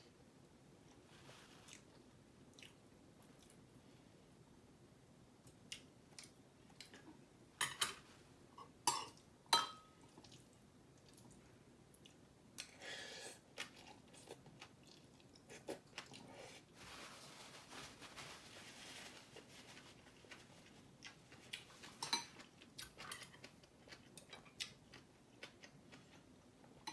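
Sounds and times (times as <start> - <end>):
person chewing food: 0.9 - 3.7, 9.9 - 16.8, 19.2 - 26.9
short rustle: 16.6 - 20.5.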